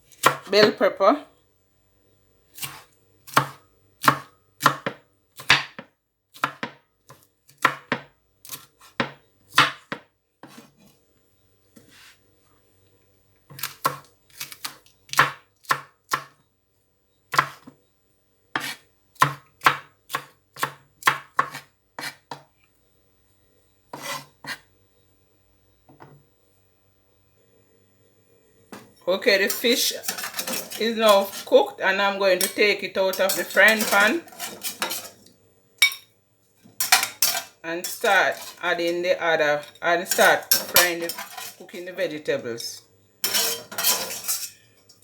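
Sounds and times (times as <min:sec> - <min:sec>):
knife chopping on cutting board: 0:00.2 - 0:00.7, 0:02.6 - 0:06.8, 0:07.5 - 0:10.7, 0:17.3 - 0:17.7, 0:18.6 - 0:22.4, 0:23.9 - 0:24.6.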